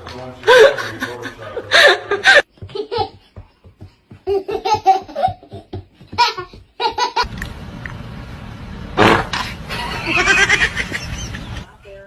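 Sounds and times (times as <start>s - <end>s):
baby laughing: 4.2s - 7.3s.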